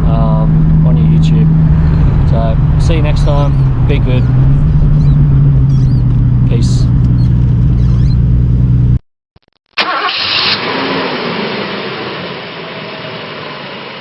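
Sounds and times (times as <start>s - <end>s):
car engine running: 0.0s - 9.0s.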